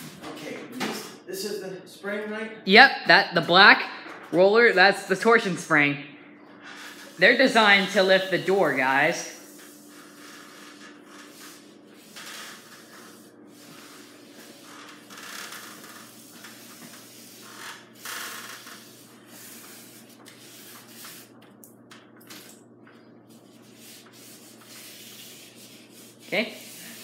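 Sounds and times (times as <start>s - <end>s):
hissing rubbing strokes: 6.6s - 21.4s, 23.3s - 27.0s.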